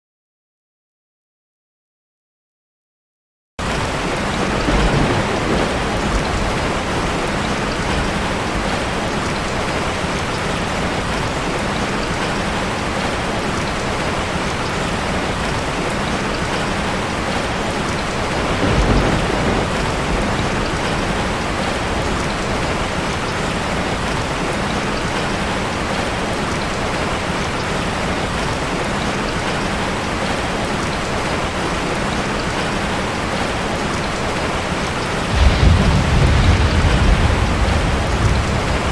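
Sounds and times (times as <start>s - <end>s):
heavy rain falling: 3.6s - 38.9s
thunder rumble: 4.0s - 10.2s, 17.4s - 24.5s, 35.3s - 38.9s.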